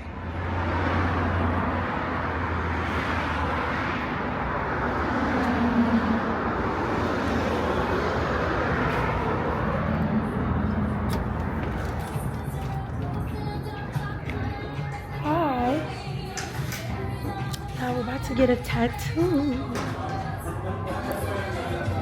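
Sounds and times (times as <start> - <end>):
road vehicle noise: 0.0 - 22.0.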